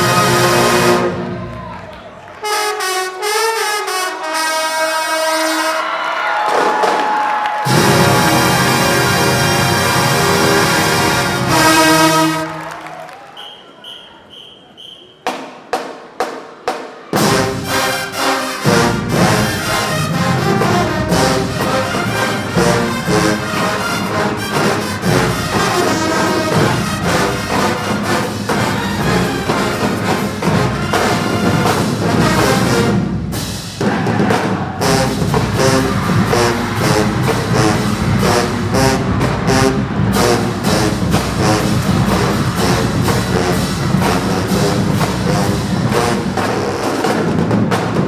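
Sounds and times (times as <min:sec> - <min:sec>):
marching band playing: 0:00.0 - 0:48.0
sharp drum strokes: 0:15.3 - 0:48.0.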